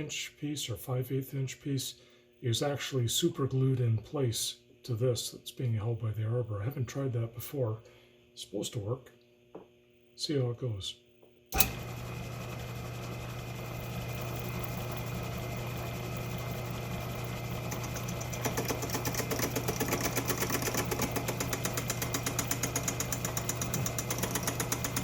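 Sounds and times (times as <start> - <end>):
metal lathe humming: 11.6 - 25.0
rapid even pulsing of cutting tool: 12.7 - 25.0.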